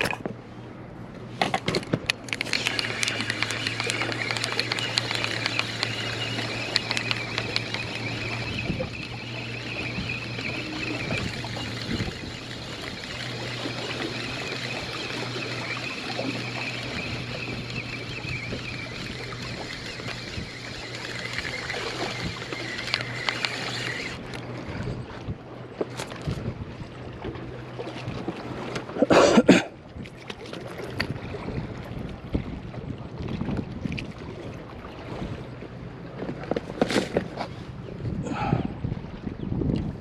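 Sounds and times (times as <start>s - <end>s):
motorboat engine humming: 0.0s - 40.0s
water noise: 0.0s - 40.0s
wind noise: 1.7s - 15.4s, 16.1s - 25.5s, 26.2s - 27.0s, 30.8s - 35.4s, 37.0s - 40.0s
small clicks: 1.8s - 24.4s.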